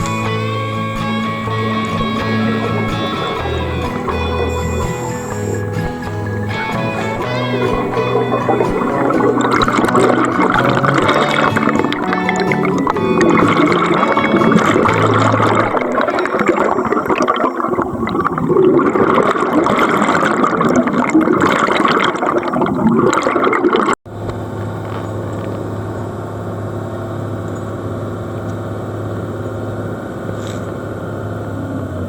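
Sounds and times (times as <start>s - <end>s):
underwater air bubbles gurgling: 0.9s - 24.0s.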